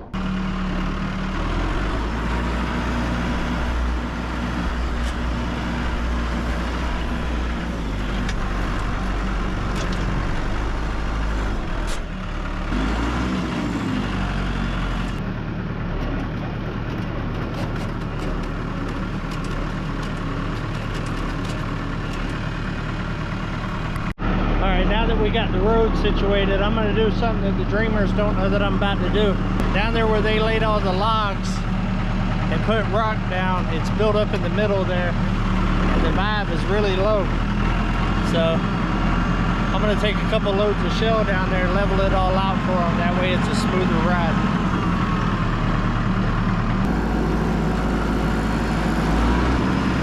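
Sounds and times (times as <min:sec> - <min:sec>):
diesel tractor engine running: 0:00.0 - 0:50.0
knocks and rattles: 0:15.9 - 0:22.4.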